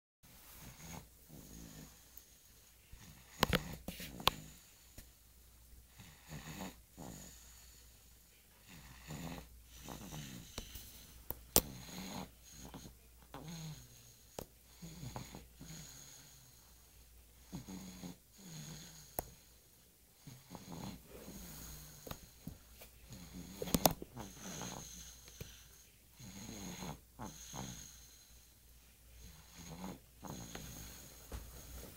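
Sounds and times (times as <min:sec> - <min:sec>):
baby snoring: 0:00.6 - 0:02.2, 0:05.9 - 0:07.8, 0:08.6 - 0:10.7, 0:11.6 - 0:16.6, 0:17.4 - 0:19.2, 0:20.2 - 0:22.4, 0:23.0 - 0:28.5, 0:29.2 - 0:31.2.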